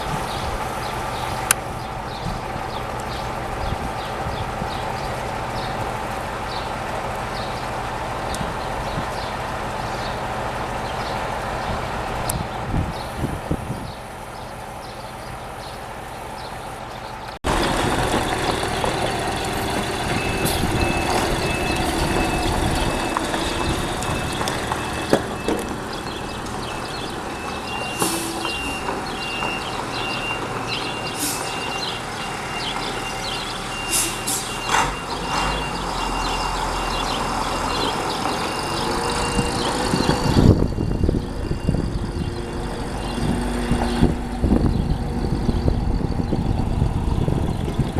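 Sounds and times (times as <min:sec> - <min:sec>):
bus diesel engine running: 0:00.0 - 0:47.9
rapidly pulsing electronic beep: 0:38.5 - 0:43.8.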